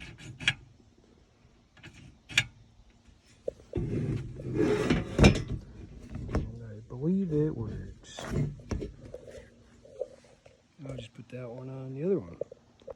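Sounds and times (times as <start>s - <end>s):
sliding window scraping: 3.7s - 6.5s.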